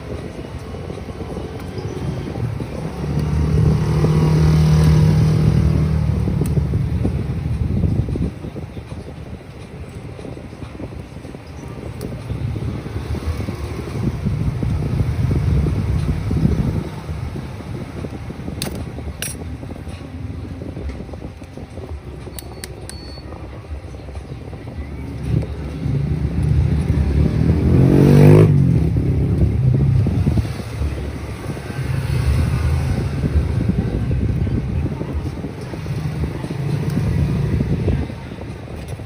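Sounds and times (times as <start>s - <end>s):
road traffic rumbling: 0.0s - 39.0s
vehicle engine passing: 1.2s - 7.7s, 25.2s - 35.1s.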